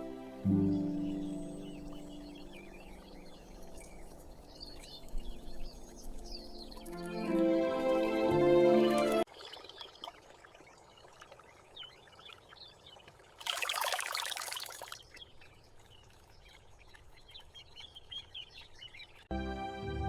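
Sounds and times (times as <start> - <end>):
small birds chirping: 0.0 - 8.3, 15.0 - 19.3.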